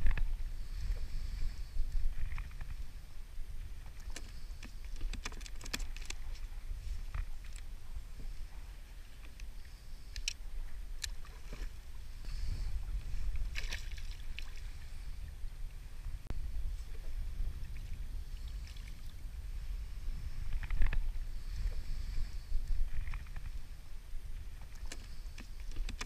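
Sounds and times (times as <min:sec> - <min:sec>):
water splashing against hull: 0:00.0 - 0:26.0
small clicks and knocks: 0:04.0 - 0:06.5, 0:24.8 - 0:26.0
wind buffeting microphone: 0:05.7 - 0:26.0.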